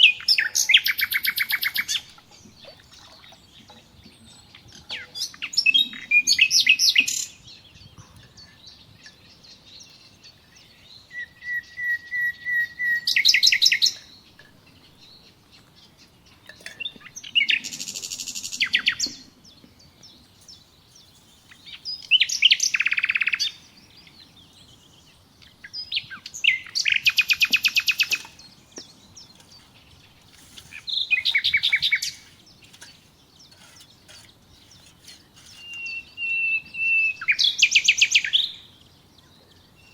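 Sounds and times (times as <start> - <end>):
songbird trilling: 16.3 - 38.7.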